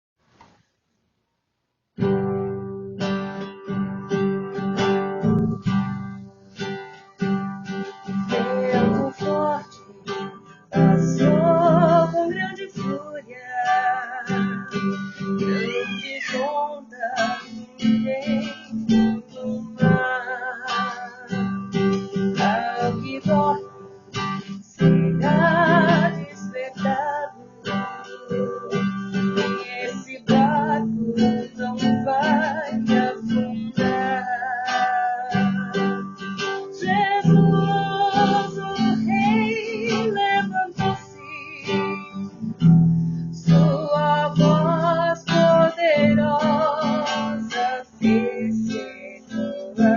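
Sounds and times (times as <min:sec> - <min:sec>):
acoustic guitar strumming: 0:02.0 - 0:49.9
person singing held notes: 0:12.3 - 0:17.7.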